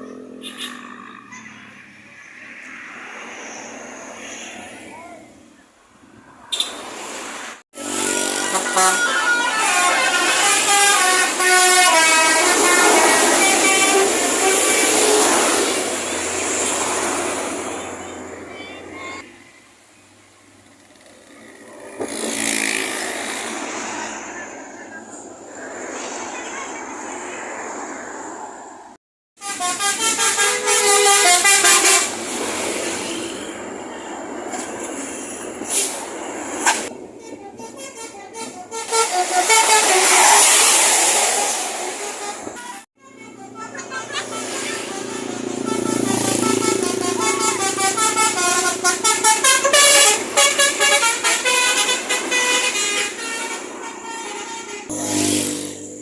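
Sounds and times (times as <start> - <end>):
vehicle passing: 0.0 - 8.8, 20.7 - 29.0, 39.2 - 52.7, 54.8 - 56.0
multi-tone air horn tooting: 7.8 - 17.8, 29.4 - 32.3, 36.6 - 55.5.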